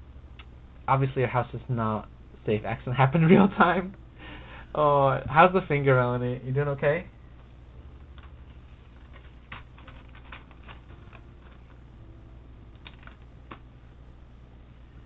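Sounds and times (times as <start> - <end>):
steady low hum: 0.0 - 15.0
keyboard parts clicking and tapping: 7.4 - 11.9, 12.7 - 13.7.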